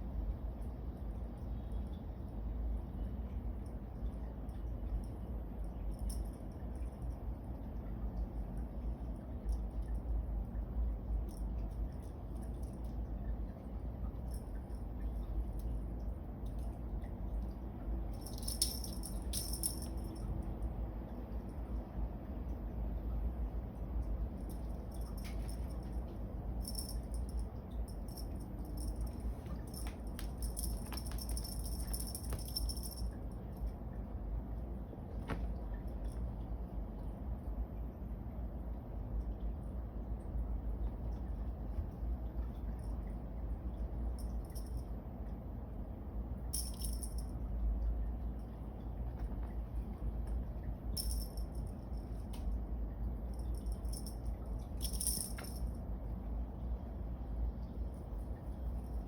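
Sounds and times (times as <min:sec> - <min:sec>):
steady low rumble: 0:00.0 - 0:59.0
small bell jingling: 0:05.0 - 0:07.3, 0:18.1 - 0:20.6, 0:24.1 - 0:33.8, 0:44.2 - 0:44.9, 0:46.5 - 0:47.4, 0:51.0 - 0:52.5, 0:53.2 - 0:55.8
wand toy rattling: 0:18.1 - 0:20.2, 0:24.4 - 0:33.2, 0:46.5 - 0:47.3, 0:51.0 - 0:52.2, 0:53.4 - 0:55.8.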